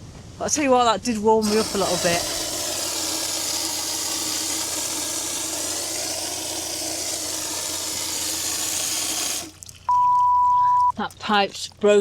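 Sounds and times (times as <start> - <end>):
water rushing from broken pipe: 1.4 - 9.9.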